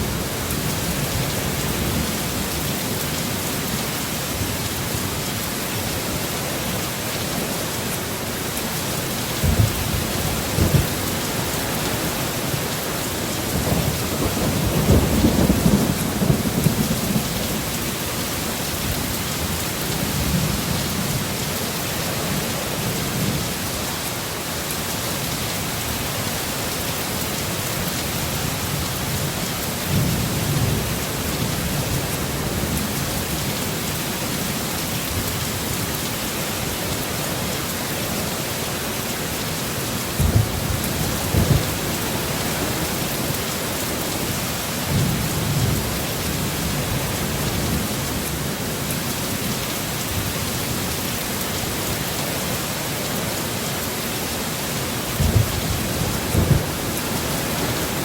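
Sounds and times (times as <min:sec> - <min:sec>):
heavy rain: 0:00.0 - 0:58.0
thunder rolling: 0:55.2 - 0:57.0.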